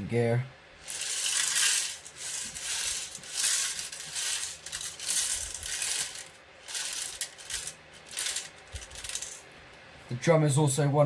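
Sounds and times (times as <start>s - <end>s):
plastic pieces rattling and clicking: 0.8s - 9.4s.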